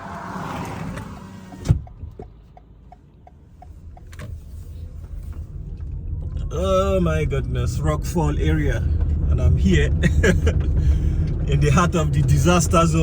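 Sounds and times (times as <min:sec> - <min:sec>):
passing car rush: 0:00.0 - 0:02.5
engine and road rumble: 0:00.0 - 0:13.0
turn indicator ticking: 0:01.0 - 0:07.6.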